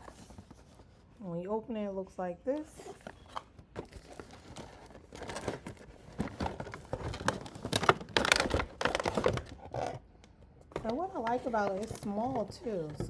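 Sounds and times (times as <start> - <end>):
packaging rustling and crinkling: 0.0 - 1.2, 2.6 - 13.0.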